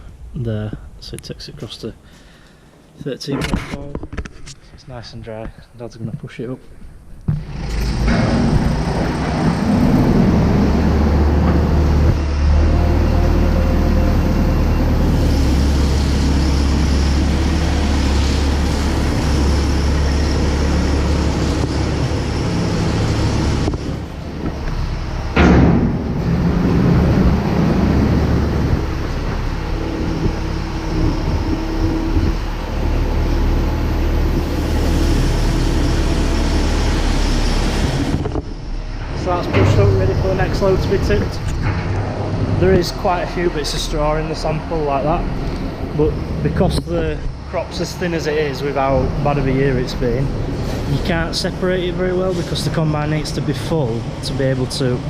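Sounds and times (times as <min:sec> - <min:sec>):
combine harvester running: 0:07.3 - 0:55.0.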